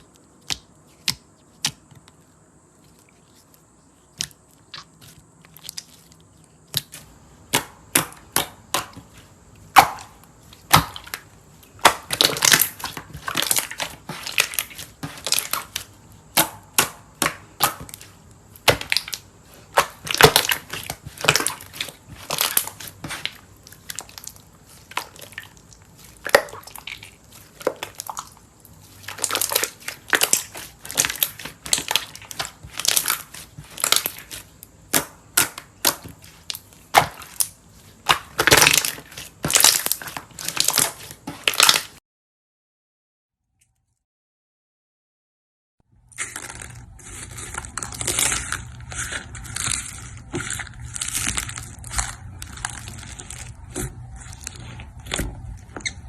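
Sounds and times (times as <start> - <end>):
slime crackling and popping: 9.7 - 42.0, 46.1 - 56.0.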